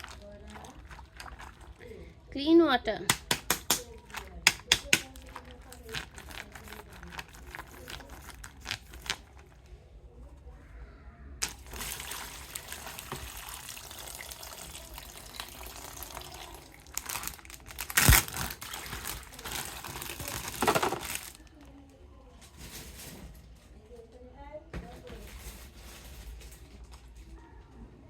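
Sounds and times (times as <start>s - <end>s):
plastic packaging crinkling: 0.0s - 2.0s, 3.1s - 9.7s, 11.4s - 21.8s.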